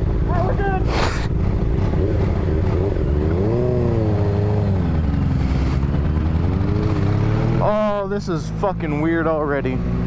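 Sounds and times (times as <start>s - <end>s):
motorcycle engine pulling away: 1.3s - 7.7s.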